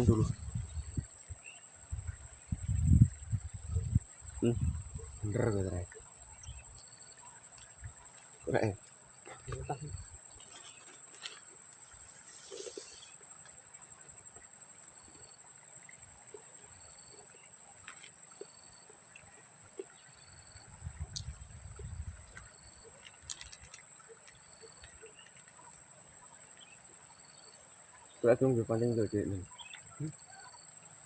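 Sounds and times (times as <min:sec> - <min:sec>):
high-pitched insect drone: 0:11.7 - 0:13.2
small clicks: 0:22.3 - 0:25.8.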